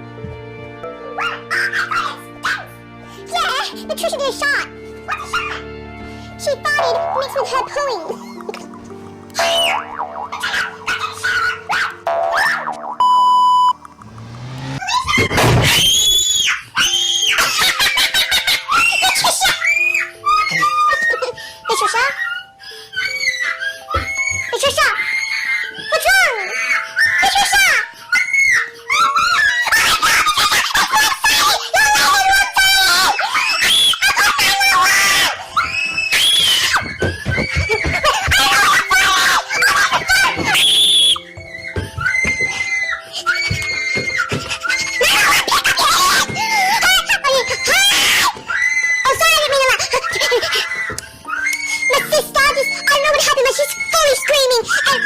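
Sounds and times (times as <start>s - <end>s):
electronic beep: 12.1s - 13.8s.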